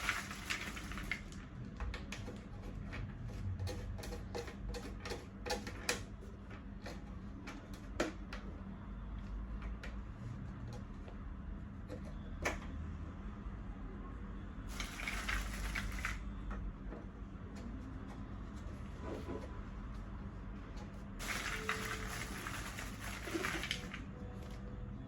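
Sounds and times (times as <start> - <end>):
plastic scraping: 0.0 - 1.4, 14.7 - 16.2, 21.2 - 24.1.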